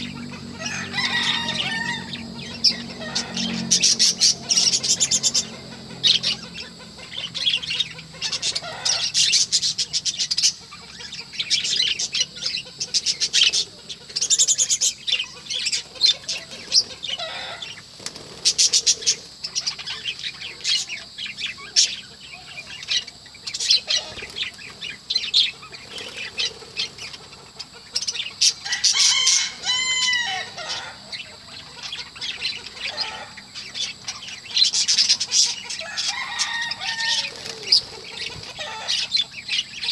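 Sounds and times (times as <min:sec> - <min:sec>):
budgerigar chatter: 0:00.0 - 0:39.9
budgerigar wavering call: 0:00.0 - 0:39.9.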